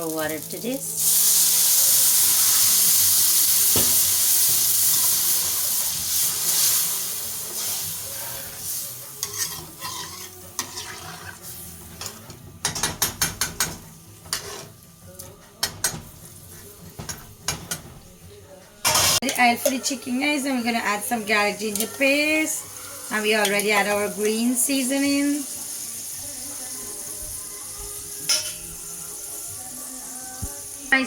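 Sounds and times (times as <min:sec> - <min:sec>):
water sizzling in hot pan: 0:00.0 - 0:13.4, 0:18.8 - 0:31.0
utensil stirring against pan: 0:01.1 - 0:24.5.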